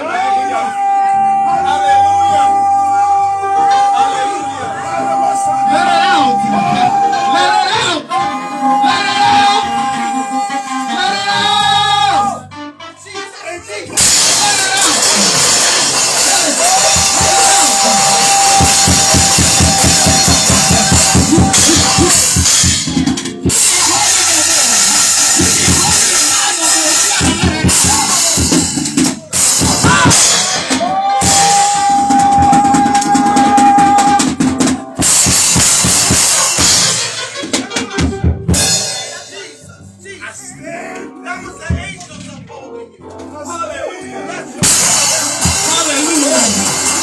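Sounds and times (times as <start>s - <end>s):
long held note: 0.4s - 12.7s
live band playing fast music: 3.3s - 39.4s, 44.6s - 47.0s
bass drum and snare hits: 13.9s - 26.5s, 27.1s - 38.9s.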